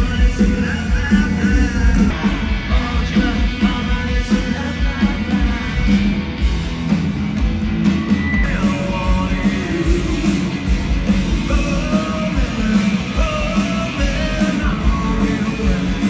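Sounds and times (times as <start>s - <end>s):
rock band playing live: 0.0s - 16.0s
person singing: 8.4s - 10.5s, 11.3s - 16.0s.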